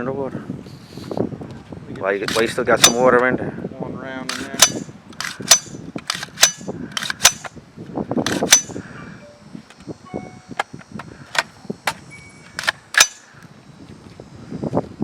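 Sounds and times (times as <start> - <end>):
gunshots: 2.3 - 3.0, 4.3 - 7.5.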